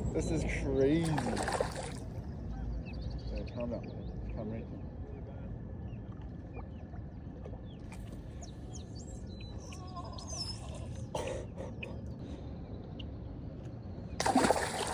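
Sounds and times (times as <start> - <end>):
steady low rumble: 0.0 - 9.6
birds chirping and whistling: 8.3 - 11.1.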